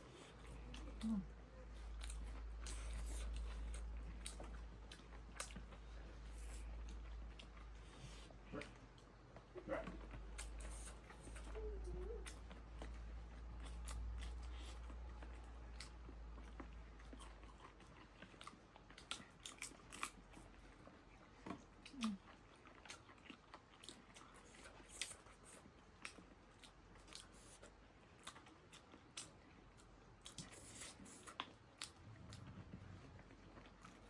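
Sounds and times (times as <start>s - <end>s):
chewing crunches: 0.0s - 11.6s, 12.2s - 34.0s.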